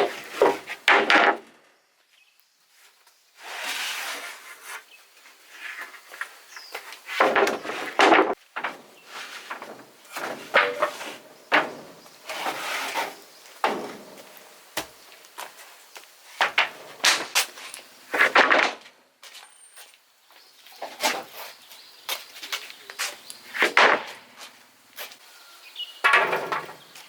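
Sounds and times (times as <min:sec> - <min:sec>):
wooden knocks and scrapes: 0:00.0 - 0:01.5, 0:05.6 - 0:14.4, 0:26.0 - 0:27.0.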